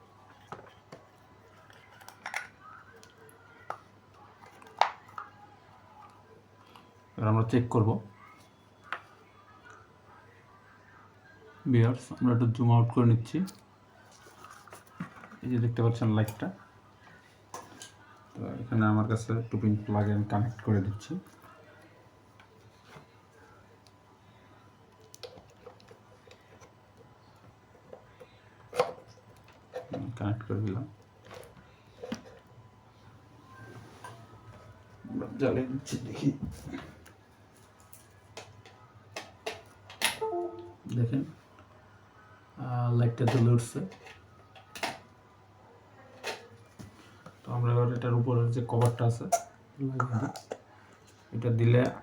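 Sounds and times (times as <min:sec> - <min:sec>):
faint steady hum: 0:00.0 - 0:52.0
small tools clicking and tapping: 0:01.6 - 0:03.8.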